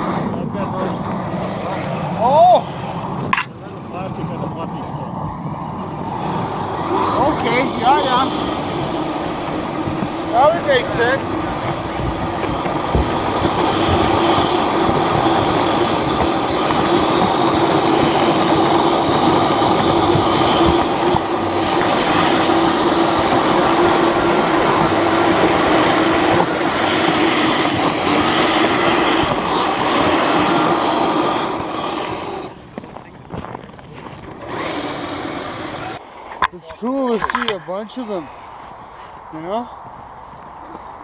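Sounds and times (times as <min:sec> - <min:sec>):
tracks clattering: 0:05.2 - 0:38.2
toy motor and gear whine: 0:05.6 - 0:32.6, 0:34.2 - 0:36.0.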